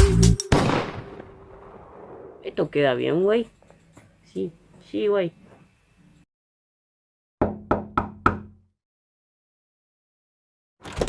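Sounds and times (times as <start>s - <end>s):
knocks on a door: 7.4s - 8.6s.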